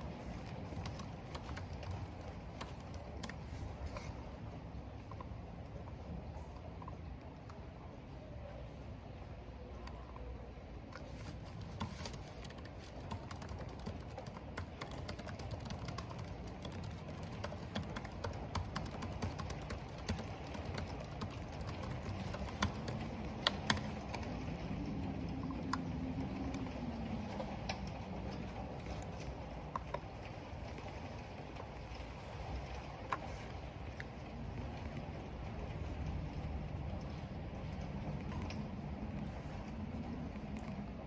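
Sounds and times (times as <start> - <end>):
wind: 0.0 - 41.0
typing on computer keyboard: 0.3 - 3.6, 11.2 - 24.5
rain: 15.7 - 41.0.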